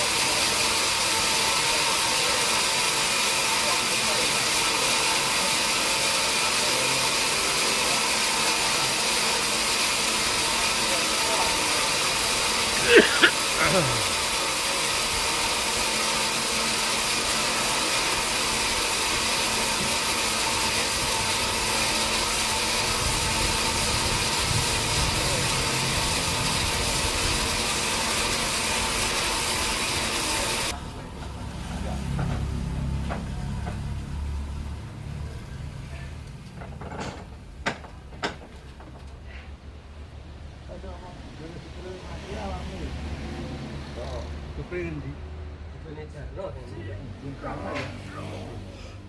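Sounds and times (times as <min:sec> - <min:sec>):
sawmill machinery running: 0:00.0 - 0:39.2
low engine rumble: 0:30.7 - 0:43.0.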